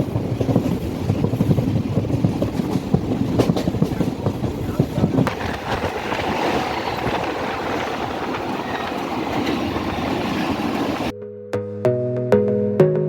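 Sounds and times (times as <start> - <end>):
passenger train running: 0.0 - 11.1
music: 11.1 - 13.0.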